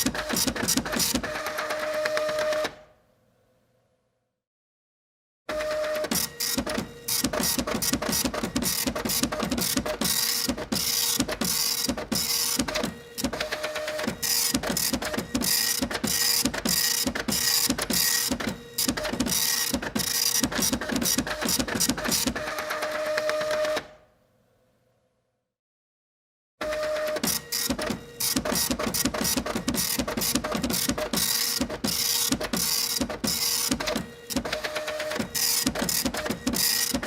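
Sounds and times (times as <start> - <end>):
printer printing: 0.0 - 2.9, 5.5 - 24.0, 26.6 - 37.0.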